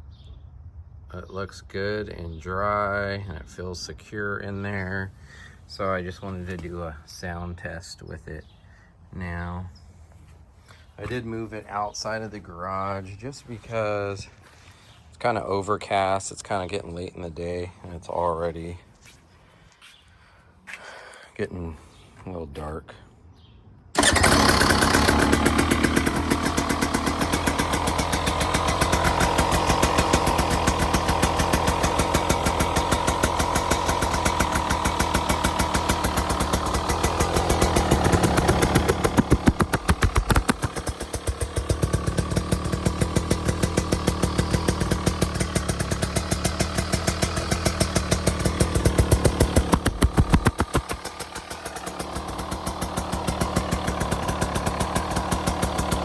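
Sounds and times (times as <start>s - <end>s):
two-stroke engine idling and revving: 24.0s - 56.0s.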